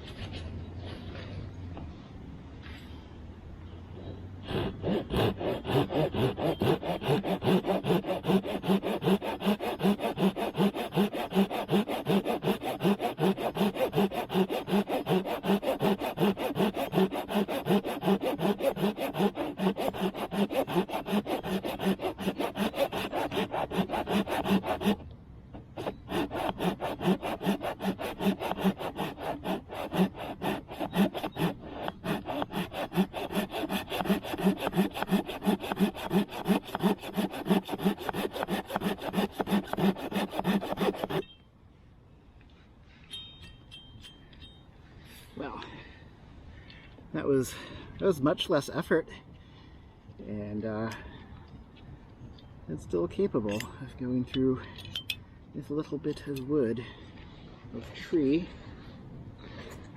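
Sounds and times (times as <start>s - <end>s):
hand saw cutting wet wood: 4.4s - 41.2s.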